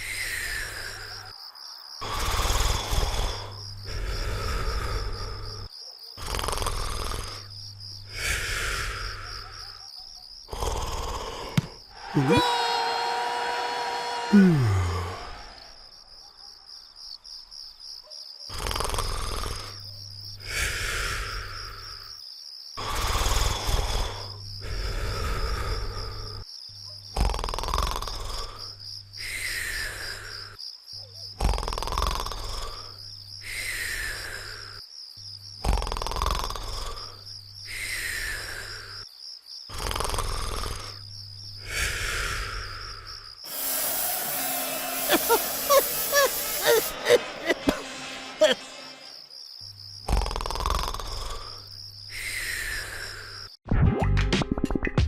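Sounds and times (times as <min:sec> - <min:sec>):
cricket chirps: 0:00.0 - 0:53.6
cartoon snoring: 0:02.0 - 0:09.6, 0:10.5 - 0:12.4, 0:14.3 - 0:15.8, 0:18.5 - 0:19.8, 0:20.4 - 0:22.0, 0:22.8 - 0:26.4, 0:27.2 - 0:30.6, 0:31.4 - 0:34.8, 0:35.6 - 0:39.0, 0:39.7 - 0:41.0, 0:41.6 - 0:49.1, 0:50.0 - 0:53.5
high cricket-like trill: 0:39.7 - 0:53.6.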